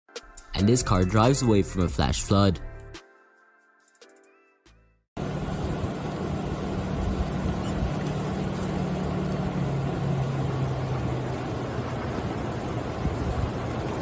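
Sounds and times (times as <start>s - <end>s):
car engine running: 5.2s - 14.0s
floodwater rushing: 5.2s - 14.0s
wind noise: 12.2s - 14.0s.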